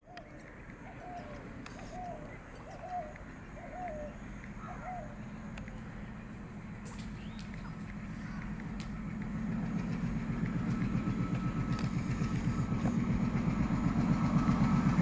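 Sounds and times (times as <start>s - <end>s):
bird calling: 0.0s - 8.6s
train rumble: 0.4s - 15.0s.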